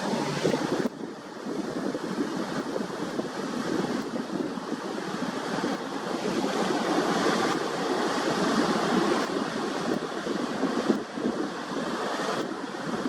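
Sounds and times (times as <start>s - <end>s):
wind and water rushing: 0.0s - 13.0s.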